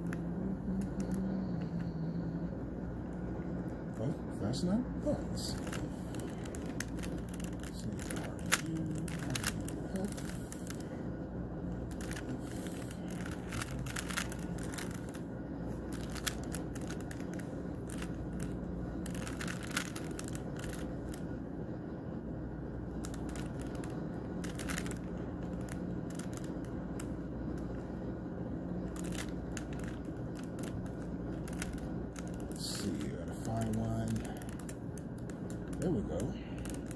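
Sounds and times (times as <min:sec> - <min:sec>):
steady low hum: 0:00.0 - 0:36.9
puzzle cube clicking: 0:05.5 - 0:10.9, 0:11.8 - 0:21.3, 0:23.0 - 0:27.7, 0:28.8 - 0:36.9.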